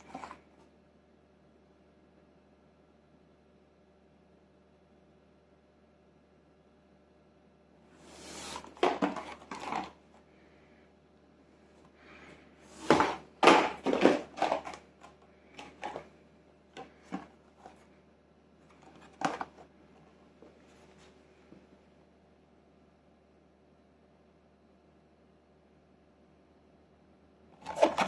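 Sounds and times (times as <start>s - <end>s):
packaging rustling: 8.1s - 10.0s, 12.1s - 16.1s
parts clicking and clattering: 8.3s - 10.0s, 12.7s - 16.2s.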